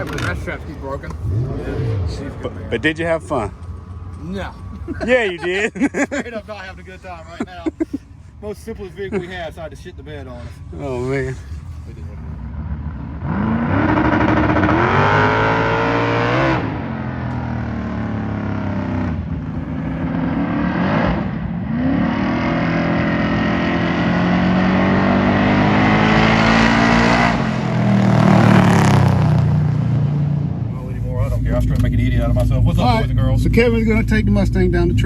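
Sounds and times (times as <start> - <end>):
car engine accelerating hard: 0.0 - 8.0, 10.7 - 35.0.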